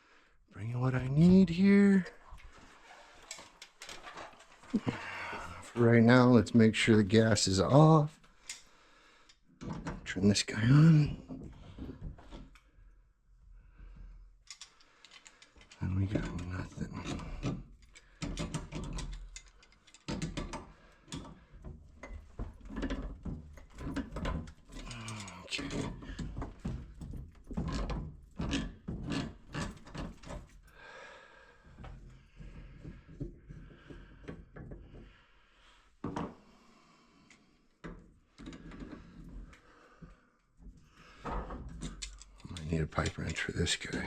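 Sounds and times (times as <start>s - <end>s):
tools knocking and scraping: 2.3s - 5.8s, 13.9s - 30.7s, 31.7s - 35.2s, 37.8s - 44.0s.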